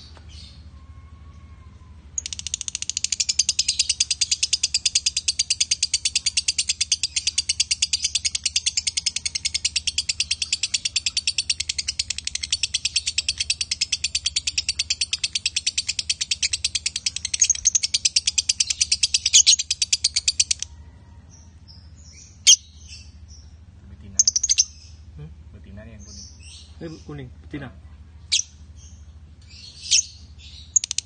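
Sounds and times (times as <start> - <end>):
lovebird rapid chatter: 2.2 - 20.7, 24.2 - 24.8, 29.8 - 31.0.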